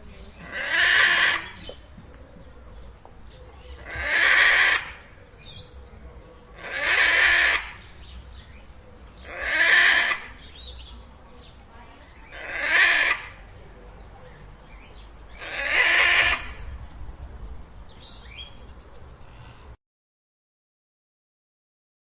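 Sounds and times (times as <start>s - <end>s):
macaw squawking: 0.4s - 1.7s, 3.8s - 5.1s, 6.6s - 7.9s, 9.2s - 10.6s, 12.2s - 13.4s, 15.4s - 16.6s.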